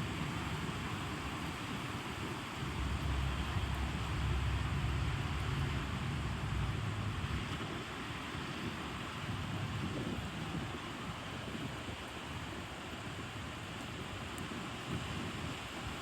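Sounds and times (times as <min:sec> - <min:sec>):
steady rain hissing: 0:00.0 - 0:16.0
low rumble: 0:02.6 - 0:08.3.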